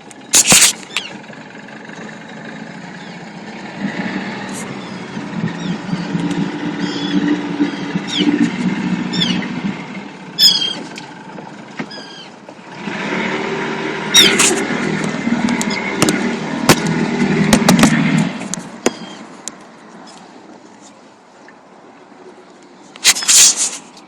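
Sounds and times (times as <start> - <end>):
boat engine humming: 0.0 - 24.0
birds giving sharp high calls: 0.2 - 1.2, 4.5 - 9.6, 10.4 - 11.0, 11.9 - 12.4, 14.1 - 14.7, 18.9 - 19.3
sharp knocks: 16.0 - 18.2.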